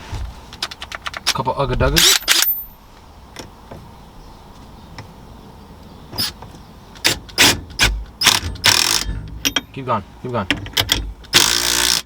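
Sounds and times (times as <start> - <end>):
impact wrench bursts: 7.0 - 9.6, 10.9 - 12.0.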